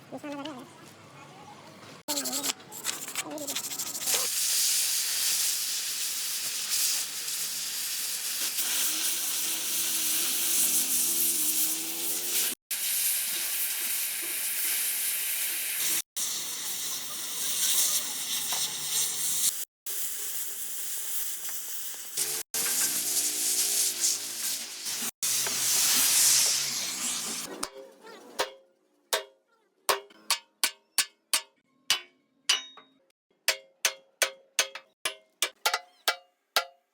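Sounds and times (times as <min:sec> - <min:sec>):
welding arc hissing: 0:02.2 - 0:27.5.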